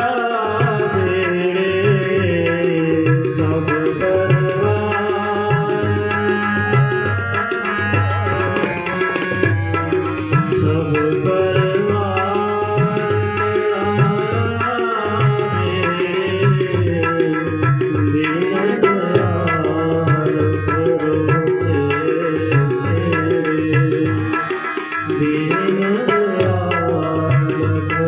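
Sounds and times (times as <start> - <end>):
person singing: 0.0 - 28.0
tabla playing: 0.0 - 28.0
melodic accompaniment: 6.0 - 20.0.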